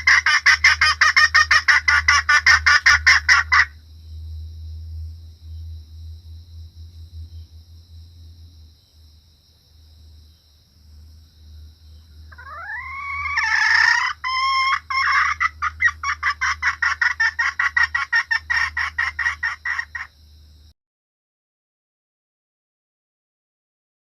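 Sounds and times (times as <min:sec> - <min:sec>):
hen calling and squawking: 0:00.0 - 0:03.7, 0:12.3 - 0:20.1
hen clucking rapidly: 0:00.0 - 0:03.8, 0:12.3 - 0:20.1.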